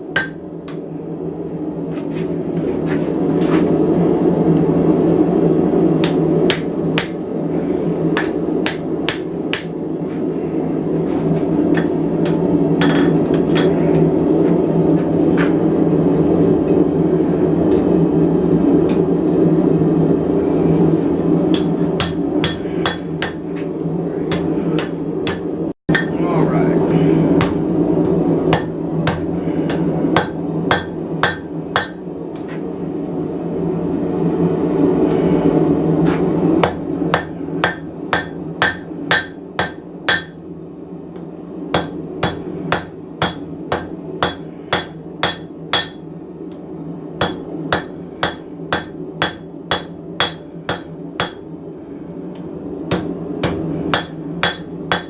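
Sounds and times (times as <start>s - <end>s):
hammer striking steel on anvil: 0.0s - 1.1s, 6.0s - 7.4s, 8.2s - 10.1s, 11.7s - 14.2s, 21.5s - 26.4s, 27.4s - 27.9s, 28.5s - 32.6s, 36.6s - 40.6s, 41.2s - 46.6s, 47.2s - 51.8s, 52.9s - 55.0s.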